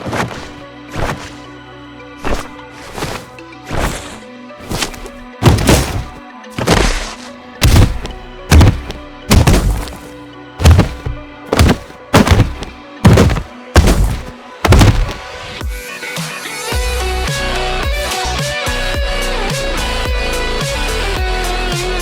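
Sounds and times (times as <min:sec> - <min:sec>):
heavy punch hits: 0:04.7 - 0:07.0, 0:07.6 - 0:15.3.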